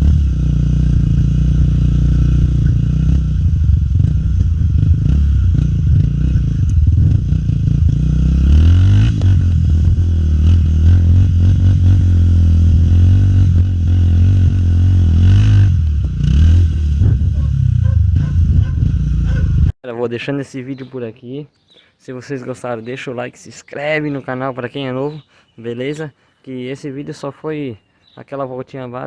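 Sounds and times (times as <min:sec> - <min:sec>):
motorcycle engine revving: 0:00.0 - 0:19.7.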